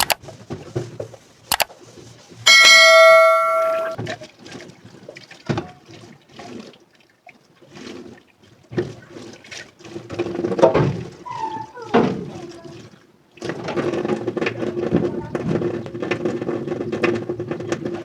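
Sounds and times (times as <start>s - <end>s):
dish ringing when struck: 2.5s - 4.0s
dishes clinking and knocking: 2.5s - 4.0s.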